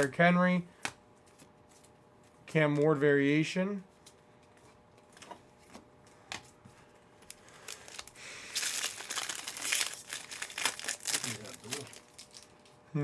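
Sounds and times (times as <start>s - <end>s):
foil wrapper crinkling and tearing: 7.2s - 12.8s.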